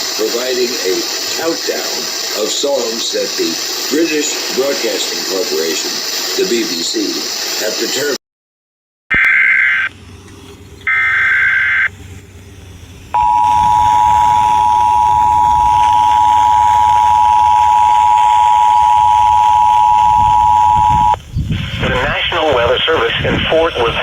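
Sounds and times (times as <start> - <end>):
digital header data bursts: 0.0 - 8.2, 13.2 - 21.2
two-tone attention signal: 13.2 - 21.2.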